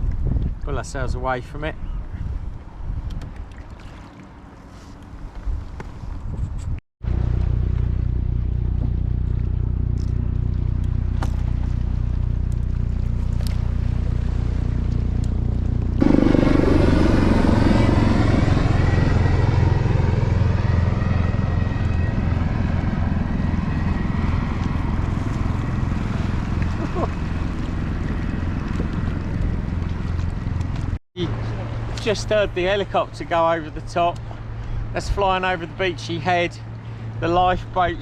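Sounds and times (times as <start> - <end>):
helicopter flying overhead: 7.1 - 38.0.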